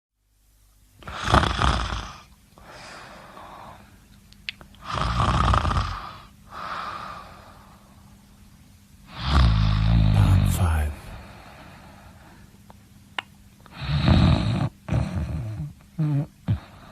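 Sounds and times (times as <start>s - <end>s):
person snoring: 9.1s - 11.5s.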